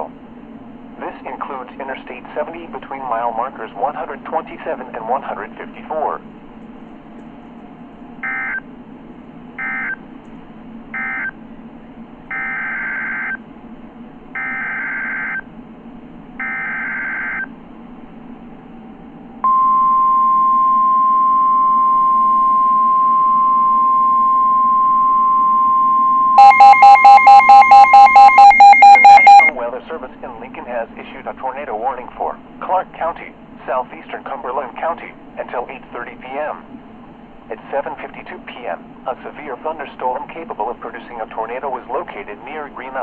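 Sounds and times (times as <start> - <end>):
steady warning alarm tone: 8.2 - 8.7, 9.6 - 10.0, 10.9 - 11.4, 12.3 - 13.4, 14.3 - 15.5, 16.4 - 17.5, 19.4 - 29.5
rapidly pulsing multi-pitched beep: 21.1 - 29.5.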